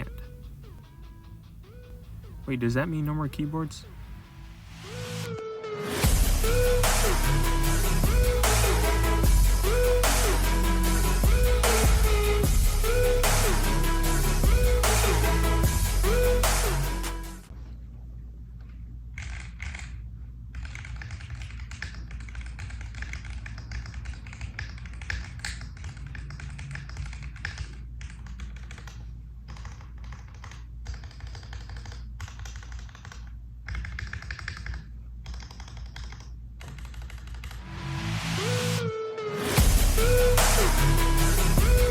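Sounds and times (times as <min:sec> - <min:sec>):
mechanical keyboard typing: 0:19.2 - 0:37.6.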